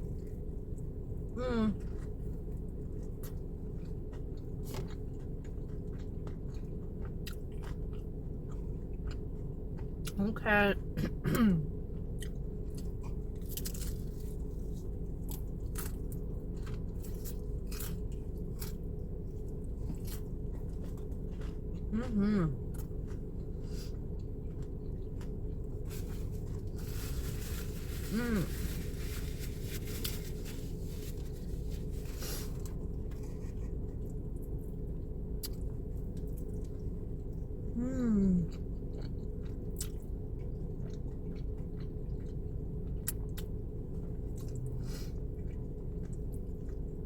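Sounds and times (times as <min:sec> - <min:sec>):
chewing crispy fried chicken: 0:00.0 - 0:47.0
low background hum: 0:00.0 - 0:47.0
scraping and handling of food: 0:12.4 - 0:21.7, 0:22.9 - 0:34.6.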